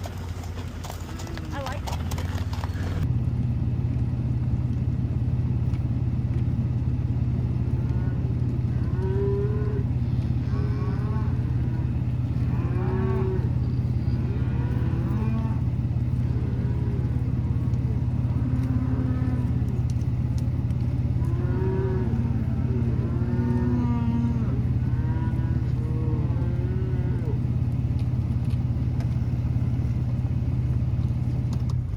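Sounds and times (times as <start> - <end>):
steady low hum: 0.0 - 31.9
cattle mooing: 7.5 - 30.0.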